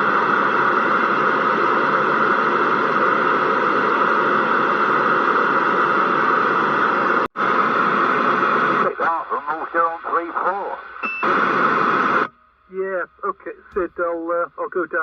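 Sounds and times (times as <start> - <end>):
radio static hiss: 7.4 - 15.0.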